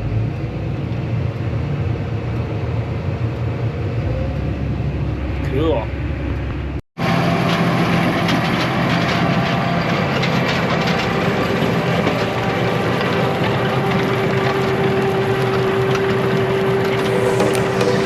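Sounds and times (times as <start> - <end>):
vehicle engine running: 0.0 - 18.0
heavy machinery rattling: 7.0 - 18.0.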